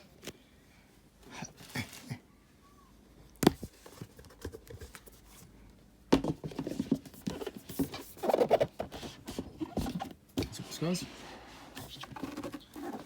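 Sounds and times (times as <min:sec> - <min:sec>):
box handling knocks and rustles: 0:03.4 - 0:05.1, 0:06.1 - 0:10.6.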